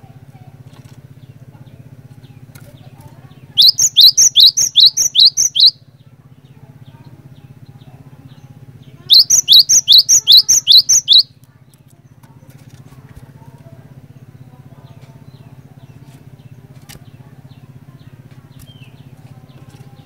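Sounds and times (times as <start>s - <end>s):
bird singing high notes: 3.6s - 5.8s, 9.1s - 11.3s.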